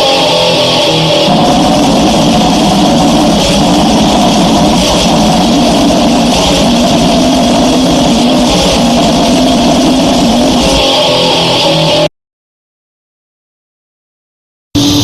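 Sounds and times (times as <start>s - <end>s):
distorted noise music: 0.0s - 12.1s, 14.8s - 15.0s.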